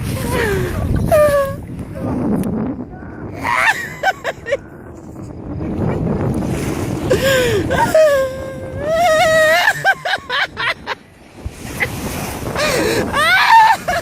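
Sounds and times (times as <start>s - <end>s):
waves: 0.0s - 14.0s
wind: 0.0s - 14.0s
person wailing and moaning: 7.1s - 10.4s, 12.6s - 14.0s.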